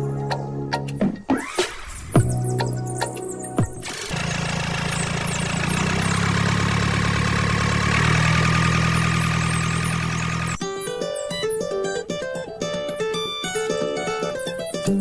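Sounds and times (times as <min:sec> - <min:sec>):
music: 0:00.0 - 0:03.9, 0:10.6 - 0:15.0
small motor running: 0:03.8 - 0:10.6.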